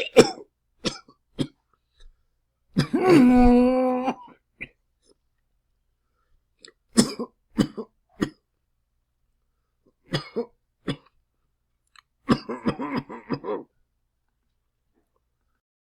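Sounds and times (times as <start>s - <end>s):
person coughing: 0.0s - 1.6s, 2.8s - 4.4s, 7.0s - 8.4s, 12.3s - 13.7s.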